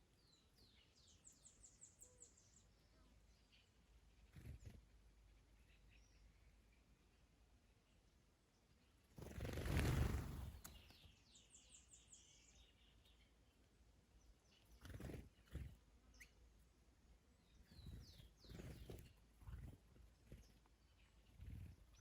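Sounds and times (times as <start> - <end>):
birds chirping: 8.8 - 16.6, 17.3 - 22.0.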